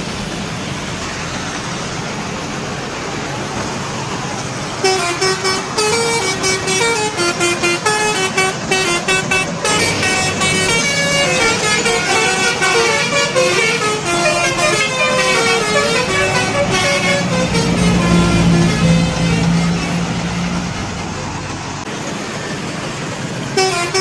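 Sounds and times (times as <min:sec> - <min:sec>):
multi-tone bus air horn melody: 0:04.8 - 0:21.2, 0:23.6 - 0:24.0.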